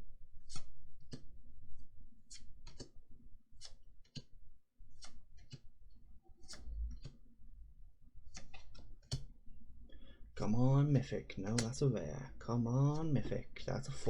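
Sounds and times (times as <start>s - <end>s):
cards snapping while flicked: 0.4s - 1.3s, 2.3s - 3.0s, 3.6s - 4.3s, 5.0s - 5.6s, 8.3s - 9.3s, 11.5s - 11.8s.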